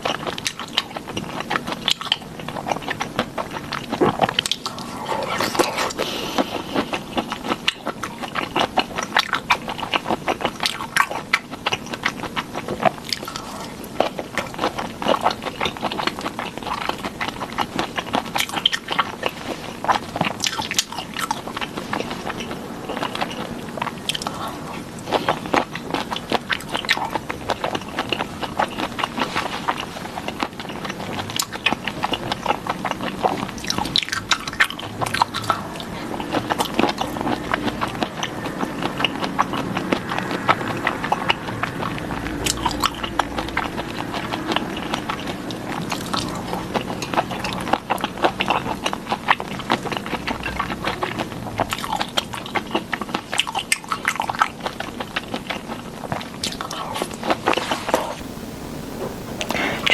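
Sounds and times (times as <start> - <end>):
biting and chewing: 0.0 - 57.4, 58.2 - 59.9.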